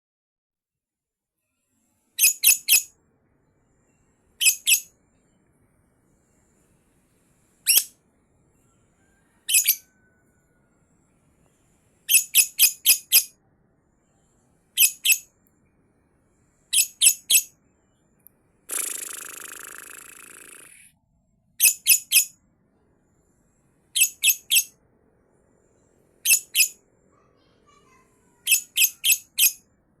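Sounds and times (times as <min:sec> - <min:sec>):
lovebird harsh high-pitched calls: 0:02.2 - 0:02.9, 0:04.4 - 0:05.0, 0:07.6 - 0:08.0, 0:09.0 - 0:10.1, 0:12.1 - 0:13.4, 0:14.8 - 0:15.3, 0:16.7 - 0:17.6, 0:18.7 - 0:20.9, 0:21.6 - 0:22.4, 0:23.9 - 0:24.8, 0:26.2 - 0:26.8, 0:27.6 - 0:29.7.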